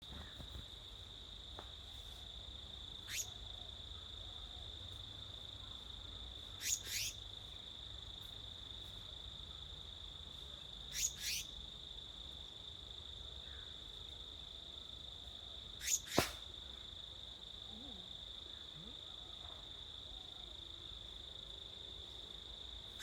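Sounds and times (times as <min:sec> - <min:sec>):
insect drone: 0:00.0 - 0:23.0
bird calls sweeping down: 0:15.8 - 0:16.4.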